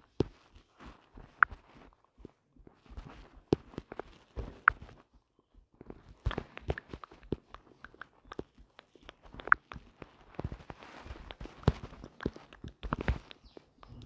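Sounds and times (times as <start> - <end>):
light taps and clicks: 0.0 - 14.0.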